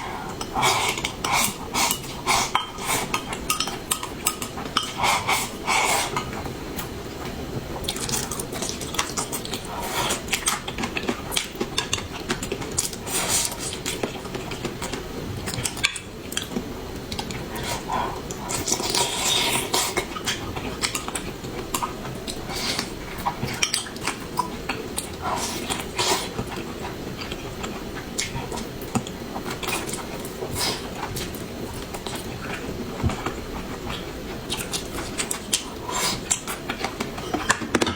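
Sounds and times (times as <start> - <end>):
utensils clinking on dishes: 37.2 - 37.9.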